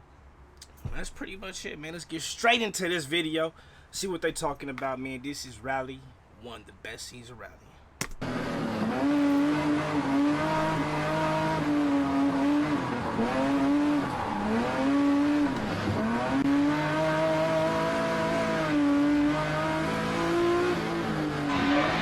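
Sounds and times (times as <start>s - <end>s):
rally car engine at high revs: 8.2s - 22.0s.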